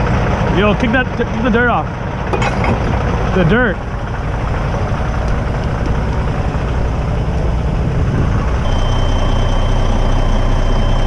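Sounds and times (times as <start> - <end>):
truck diesel engine rumbling: 0.0 - 11.0
steady high-pitched tone: 8.6 - 11.0.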